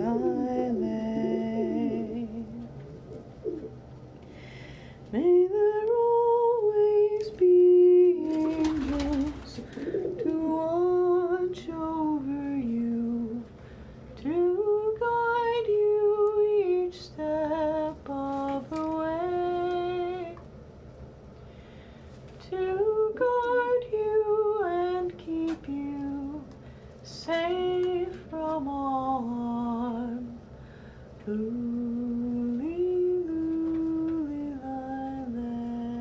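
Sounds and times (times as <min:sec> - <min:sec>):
woman humming a lullaby: 0:00.0 - 0:02.8
noisy rustle: 0:08.2 - 0:10.2.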